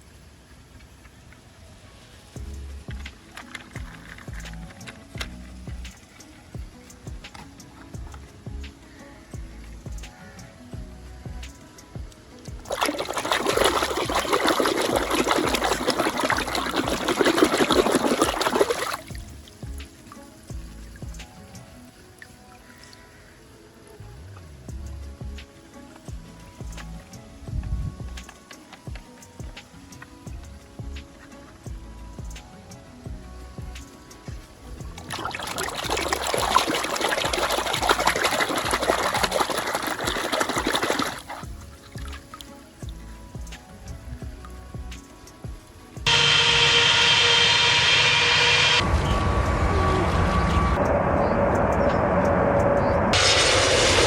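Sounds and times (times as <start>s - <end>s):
water splattering onto plastic toys: 12.5s - 23.2s, 33.7s - 45.4s.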